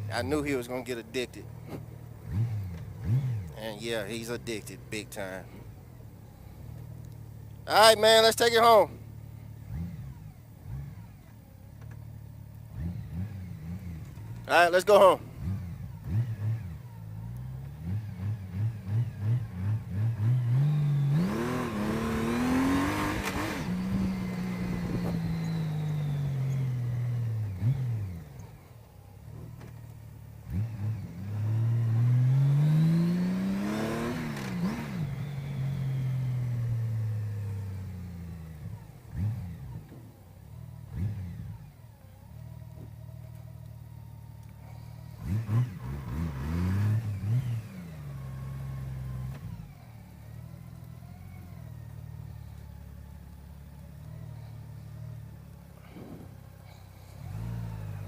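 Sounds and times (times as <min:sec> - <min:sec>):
motorcycle engine revving: 0:00.0 - 0:58.0
motorcycle accelerating past: 0:02.2 - 0:03.8, 0:12.7 - 0:14.5, 0:15.3 - 0:28.8, 0:30.4 - 0:42.0, 0:44.6 - 0:52.6, 0:54.0 - 0:58.0.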